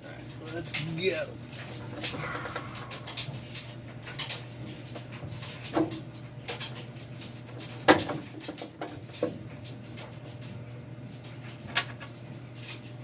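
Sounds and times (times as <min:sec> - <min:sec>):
steady low hum: 0:00.0 - 0:06.5.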